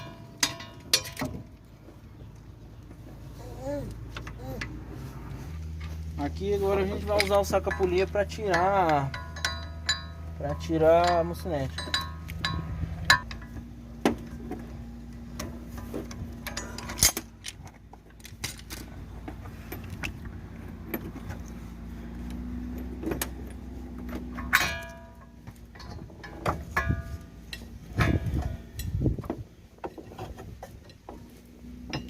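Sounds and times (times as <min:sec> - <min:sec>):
ringing metal clang: 0:00.0 - 0:01.4, 0:07.4 - 0:13.6, 0:24.2 - 0:29.0
metal tools clinking and knocking: 0:00.0 - 0:02.3, 0:05.6 - 0:21.6, 0:22.5 - 0:32.0.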